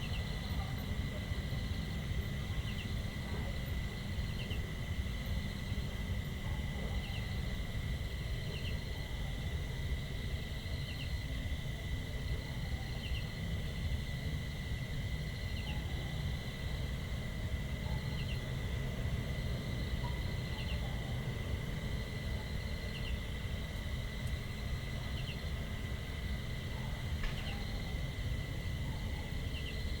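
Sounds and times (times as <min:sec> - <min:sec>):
continuous low rumble: 0:00.0 - 0:30.0
high insect drone: 0:00.0 - 0:30.0.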